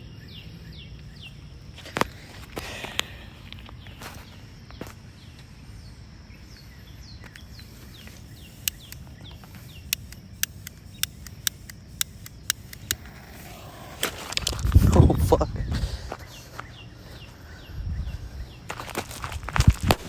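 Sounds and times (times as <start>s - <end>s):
low outdoor background: 0.0s - 20.0s
short sharp clicks: 8.6s - 9.1s, 9.8s - 14.2s.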